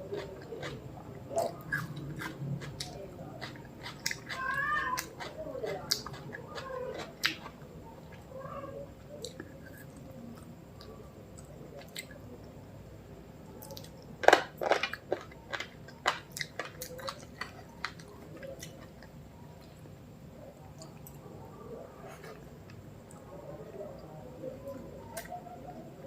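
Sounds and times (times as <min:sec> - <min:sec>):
chewing and crunching food: 0:00.0 - 0:12.6, 0:13.5 - 0:19.9.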